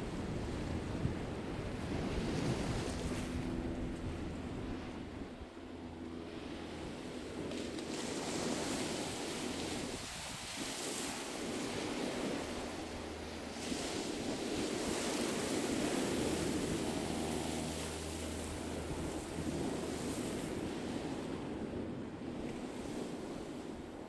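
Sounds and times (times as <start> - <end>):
wind rumbling on microphone: 0.0 - 24.0
sea waves washing onto shore: 6.6 - 24.0.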